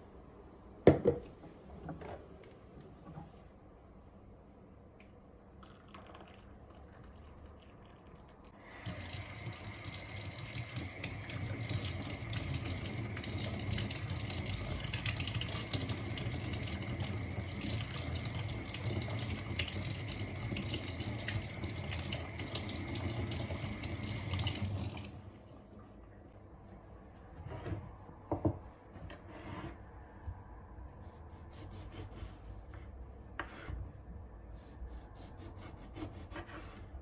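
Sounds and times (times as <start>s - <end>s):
water running from a tap: 8.6s - 25.2s.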